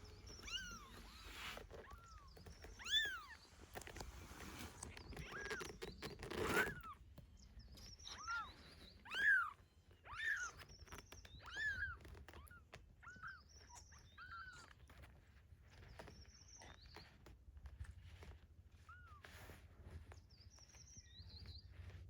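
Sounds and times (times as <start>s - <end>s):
rustling: 0.0s - 22.0s
kitten meowing: 0.1s - 3.4s, 8.1s - 15.0s.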